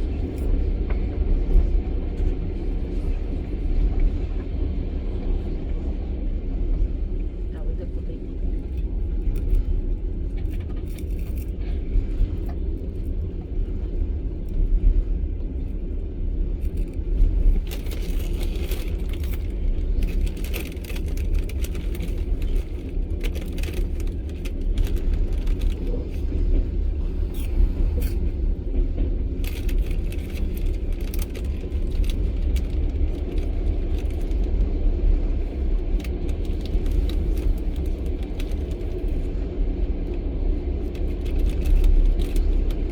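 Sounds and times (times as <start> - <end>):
train wheels rumbling on rails: 0.0 - 42.9
clicks and rattles: 17.6 - 26.4, 29.4 - 34.6.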